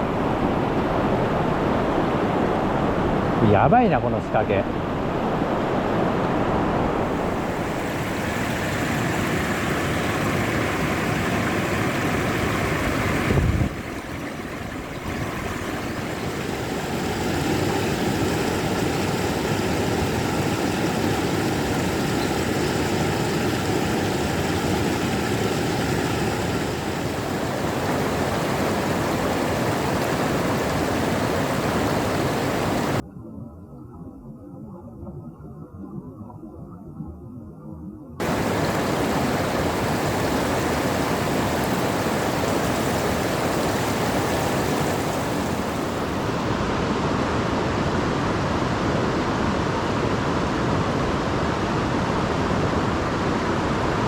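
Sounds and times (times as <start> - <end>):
rushing river water: 6.9 - 33.0, 38.2 - 50.5.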